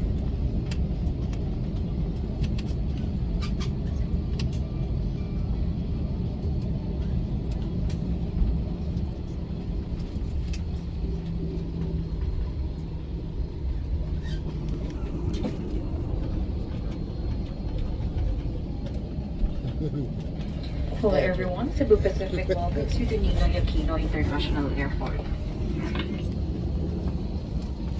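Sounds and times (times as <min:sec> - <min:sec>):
airplane cabin low rumble: 0:00.0 - 0:27.9.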